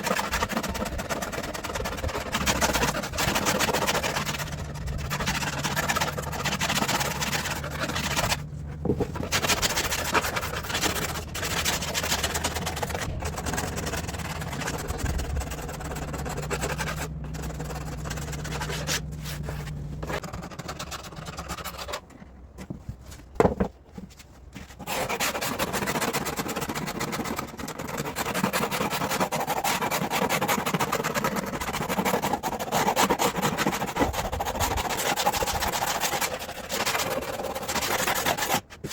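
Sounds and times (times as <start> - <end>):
rubbing and scraping of cutting fabric: 0.0 - 38.9
low steady hum: 0.9 - 24.6.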